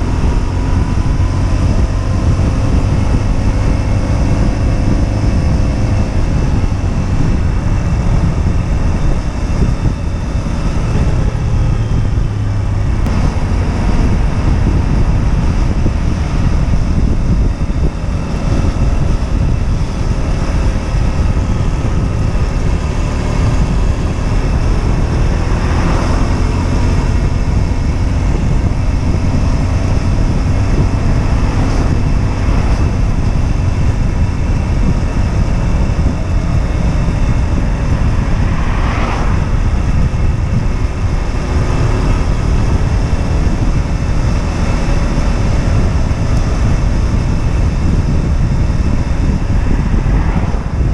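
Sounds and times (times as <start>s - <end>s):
motorcycle engine running: 0.0s - 50.9s
wind rumble on microphone: 0.0s - 50.9s.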